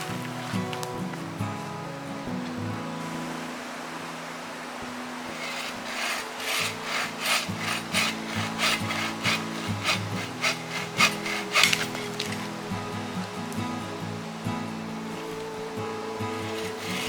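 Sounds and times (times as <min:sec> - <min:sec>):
hand saw cutting wood: 0:05.3 - 0:12.6, 0:16.4 - 0:17.0.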